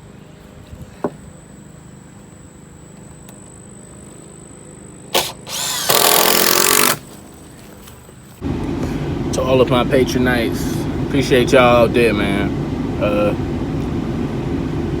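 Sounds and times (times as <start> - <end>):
power drill driving a screw: 5.1 - 7.1.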